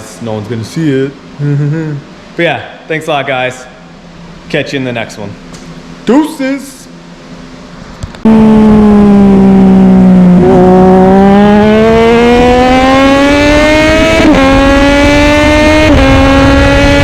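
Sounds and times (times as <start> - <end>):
car engine accelerating: 8.1 - 17.0.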